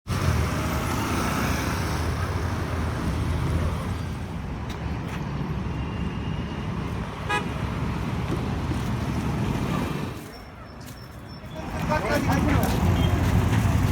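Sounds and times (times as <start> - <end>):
road traffic rumble: 0.0 - 13.9
vehicle horn toot: 7.2 - 7.6.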